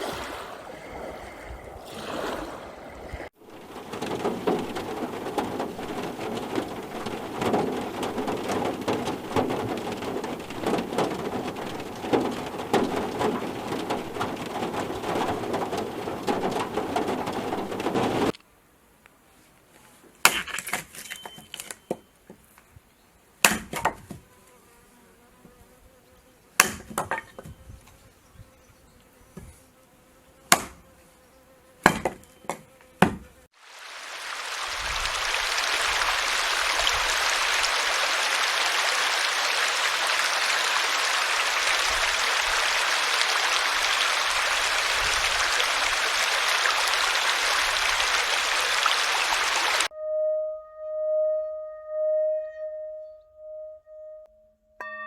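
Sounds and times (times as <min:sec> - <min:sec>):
steady dense hiss: 0:33.5 - 0:49.9.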